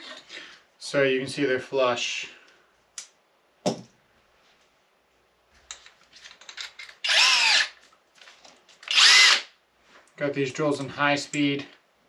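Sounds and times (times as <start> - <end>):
cordless drill motor whining: 7.0 - 7.8, 8.8 - 9.5.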